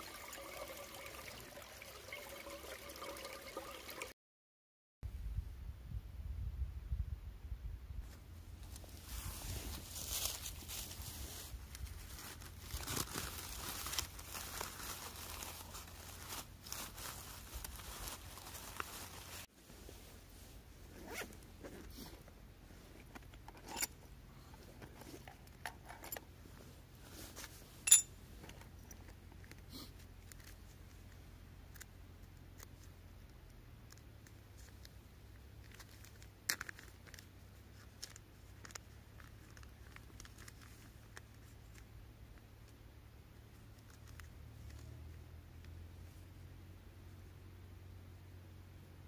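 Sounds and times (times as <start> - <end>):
handling clicks and rustles: 8.0 - 45.8
zipper pulled: 20.9 - 22.3.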